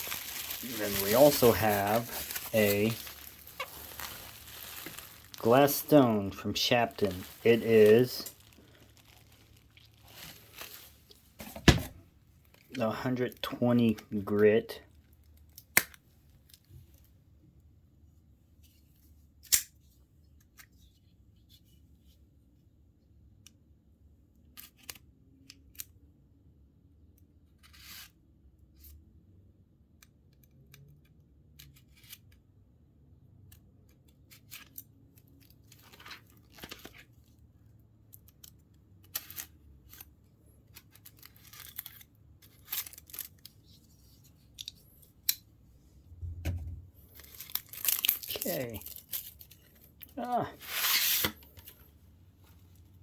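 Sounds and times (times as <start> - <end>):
packaging being opened: 0.0 - 11.7, 47.1 - 51.8.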